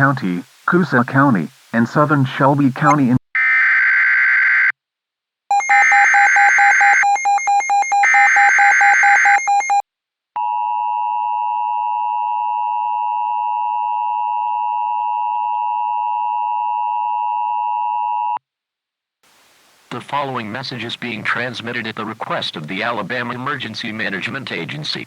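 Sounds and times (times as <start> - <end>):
two-tone attention signal: 5.5 - 9.8.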